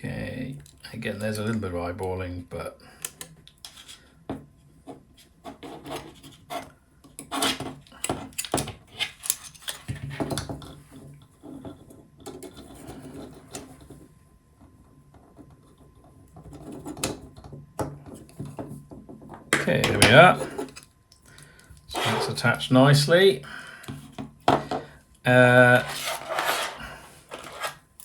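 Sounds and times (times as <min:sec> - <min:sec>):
hard parts clicking and scraping: 0:07.2 - 0:10.0, 0:19.5 - 0:22.6, 0:23.8 - 0:28.0.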